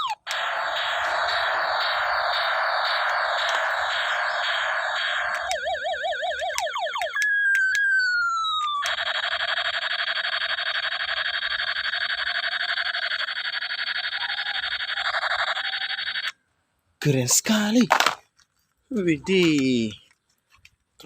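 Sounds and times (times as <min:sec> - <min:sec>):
siren-like warble: 0:00.0 - 0:16.3
toy space gun buzzing: 0:00.0 - 0:16.4
falling whistle-like tone: 0:07.1 - 0:08.9.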